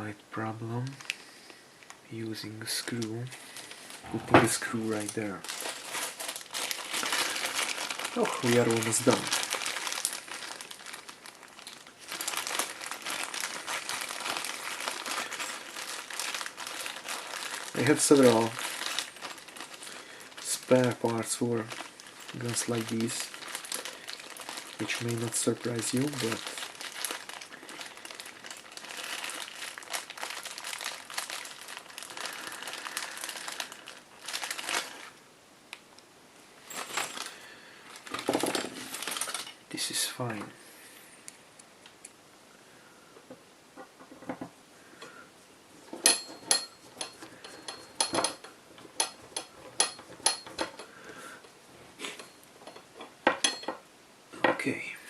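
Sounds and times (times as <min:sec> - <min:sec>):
rustling: 0:02.8 - 0:35.2, 0:36.6 - 0:41.0, 0:43.2 - 0:53.8
packaging crinkling: 0:02.8 - 0:35.8, 0:36.6 - 0:39.6.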